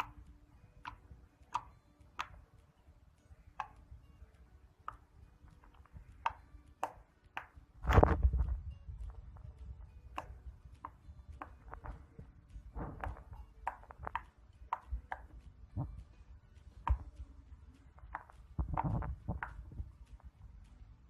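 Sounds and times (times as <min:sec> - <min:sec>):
soft clicks and taps: 0:00.0 - 0:02.8, 0:03.5 - 0:20.8
faint low rumble: 0:07.7 - 0:14.2, 0:14.9 - 0:21.0.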